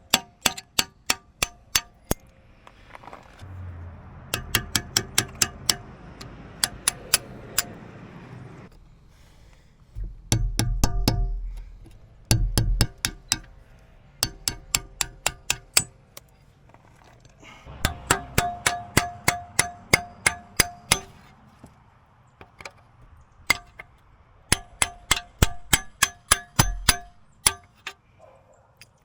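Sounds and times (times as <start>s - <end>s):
hammer clanging on steel pin: 0.0s - 2.2s, 4.3s - 5.9s, 6.6s - 7.8s, 10.3s - 11.5s, 12.3s - 13.6s, 14.2s - 16.0s, 17.8s - 21.3s, 24.5s - 28.0s.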